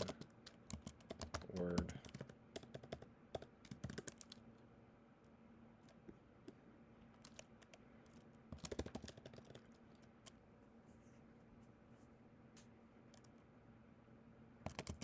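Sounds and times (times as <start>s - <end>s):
faint typing on keyboard: 0.0s - 10.5s, 12.5s - 13.5s, 14.6s - 15.0s.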